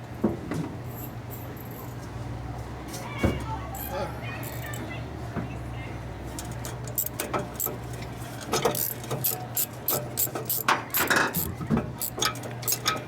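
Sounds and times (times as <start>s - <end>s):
metallic clinks of hand tools: 6.9s - 7.8s, 8.7s - 13.0s.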